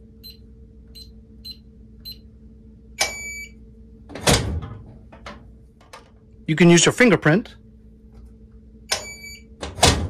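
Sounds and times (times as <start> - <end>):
long keypad beep: 8.9 - 9.5.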